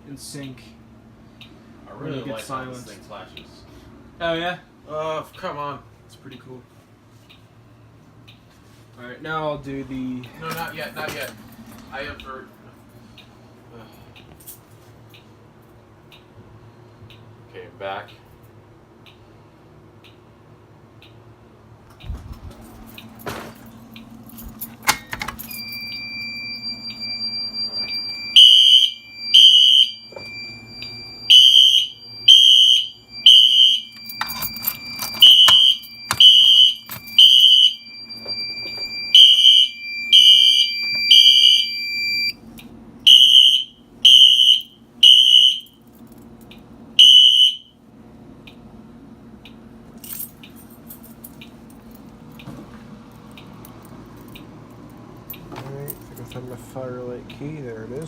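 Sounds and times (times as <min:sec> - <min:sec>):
steady high tone: 0:25.4 - 0:42.3
fire alarm horn beeps: 0:25.4 - 0:42.4, 0:43.0 - 0:45.8, 0:47.0 - 0:47.8.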